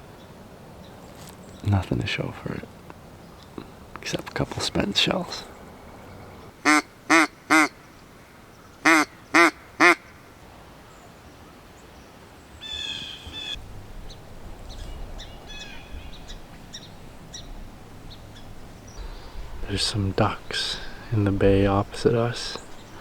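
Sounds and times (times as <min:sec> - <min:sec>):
duck call quacks: 0:06.6 - 0:07.7, 0:08.8 - 0:10.0
faint bird chirps: 0:07.5 - 0:21.2.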